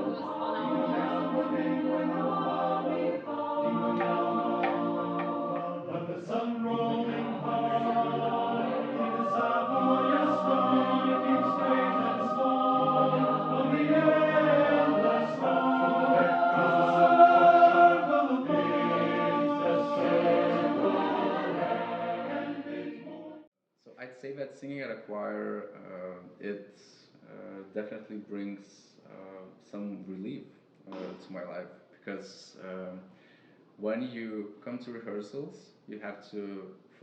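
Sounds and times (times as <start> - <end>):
choir singing sustained chords: 0.0 - 23.5.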